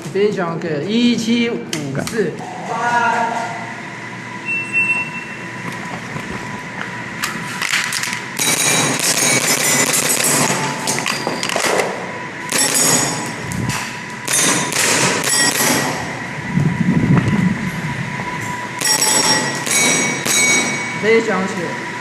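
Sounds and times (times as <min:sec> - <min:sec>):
airsoft pistol firing sharp cracks: 0:14.3 - 0:16.0.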